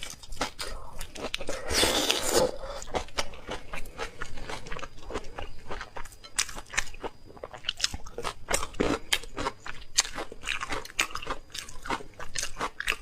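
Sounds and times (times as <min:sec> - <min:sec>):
person biting crunchy food: 0:00.0 - 0:03.6.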